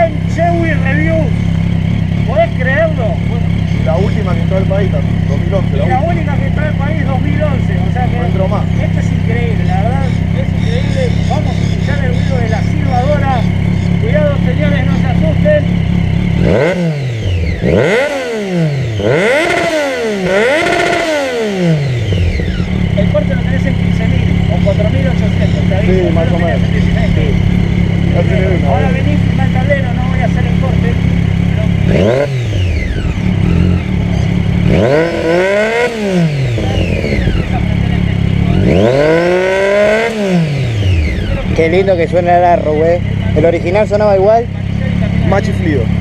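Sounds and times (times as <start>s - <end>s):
motorcycle engine revving: 0.0s - 46.0s.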